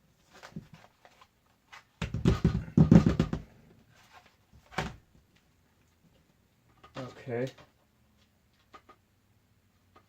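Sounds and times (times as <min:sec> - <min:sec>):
clatter of knocks and rubs: 0:02.0 - 0:04.4.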